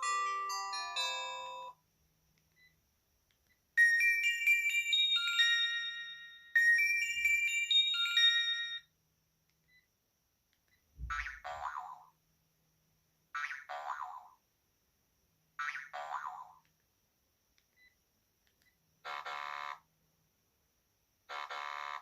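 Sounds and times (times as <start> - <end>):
phone ringtone melody: 0.0 - 1.8, 3.8 - 8.8.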